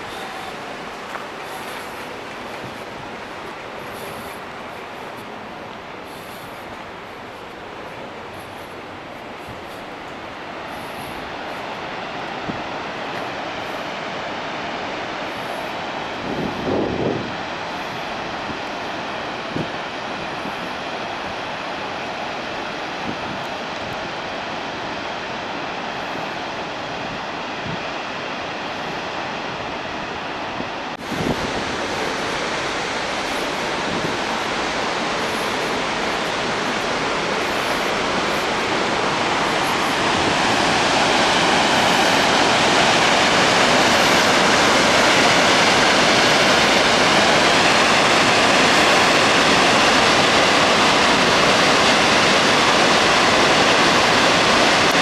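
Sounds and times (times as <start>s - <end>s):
floodwater rushing from a dam: 0.0s - 55.0s.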